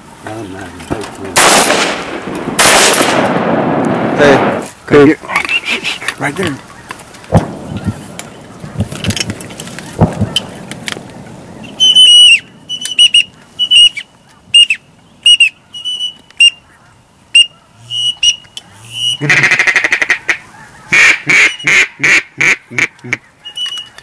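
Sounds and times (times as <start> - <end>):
duck call whistles: 11.7 - 16.6, 17.3 - 23.9
duck call quacking notes: 11.8 - 14.0, 14.6 - 16.6, 17.4 - 23.7.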